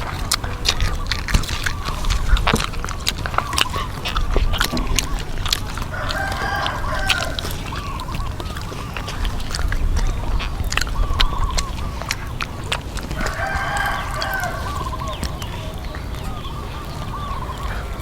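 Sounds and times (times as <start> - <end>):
chickens clucking: 0.0 - 18.0
crunchy fried chicken chewing: 0.0 - 18.0
rooster crowing: 4.7 - 8.8, 13.0 - 18.0.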